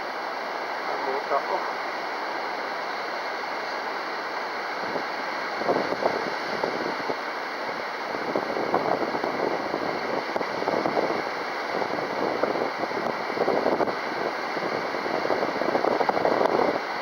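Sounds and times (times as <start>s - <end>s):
wind buffeting microphone: 4.8s - 16.9s.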